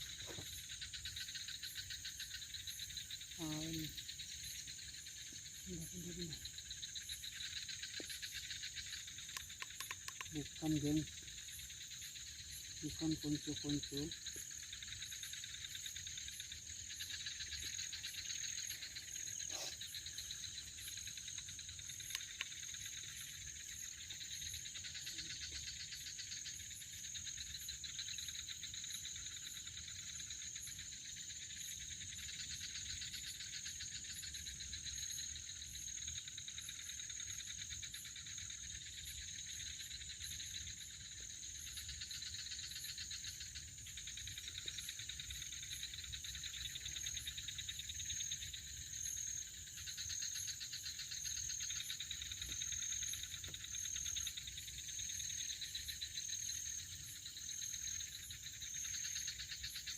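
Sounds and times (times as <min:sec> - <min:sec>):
crickets chirring: 0:00.0 - 0:59.9
pulsing insect trill: 0:00.0 - 0:59.9.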